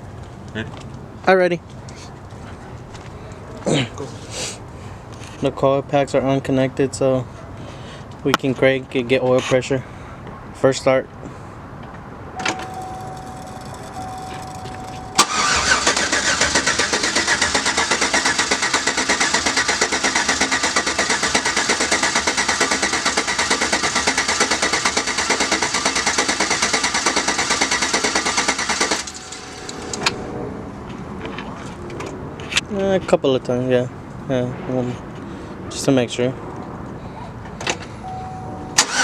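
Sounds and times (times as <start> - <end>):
faint steady tone: 12.4 - 15.2, 37.9 - 38.8
truck engine cranking without firing: 12.4 - 30.2, 38.8 - 39.0.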